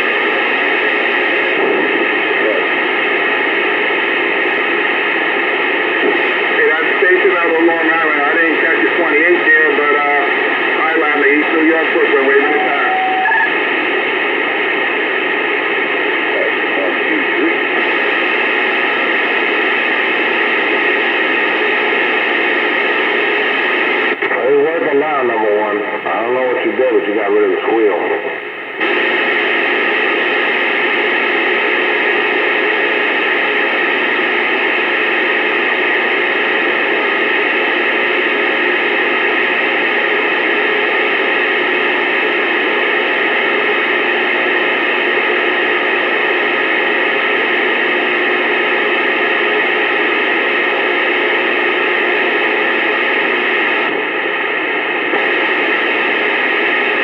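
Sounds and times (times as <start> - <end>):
radio static hiss: 0.0 - 57.0.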